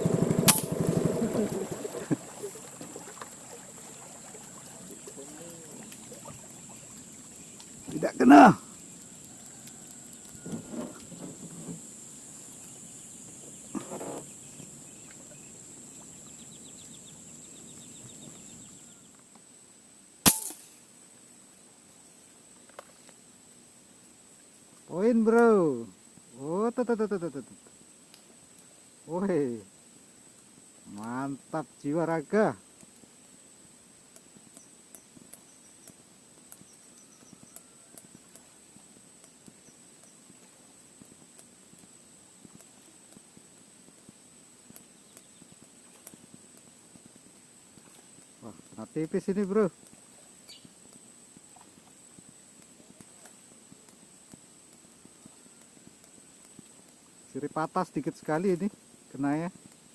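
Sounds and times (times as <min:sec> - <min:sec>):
airgun shot with ring: 0:00.4 - 0:00.9, 0:20.3 - 0:20.8
small clicks and ticks: 0:04.4 - 0:11.8, 0:27.6 - 0:28.7, 0:32.7 - 0:59.9.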